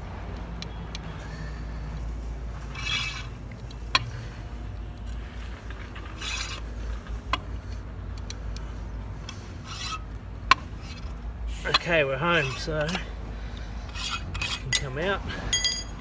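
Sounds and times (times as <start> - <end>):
low steady hum: 0.0 - 16.0
metal scraping strokes: 2.5 - 4.4, 5.0 - 7.9, 9.2 - 15.0.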